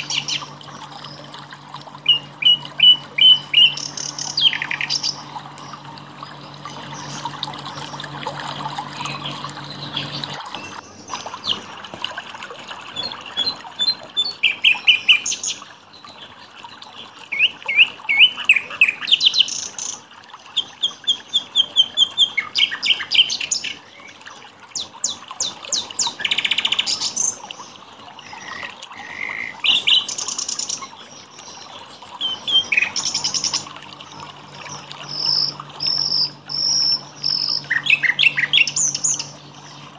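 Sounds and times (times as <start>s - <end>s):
low steady hum: 0.0s - 39.9s
songbirds singing: 0.0s - 39.9s
water splashing: 0.0s - 39.9s.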